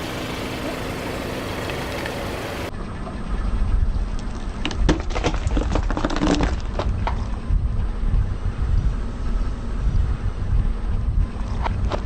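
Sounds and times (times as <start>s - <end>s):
low rumble of car: 0.0s - 12.0s
tyre crushing crunchy object: 4.8s - 7.2s.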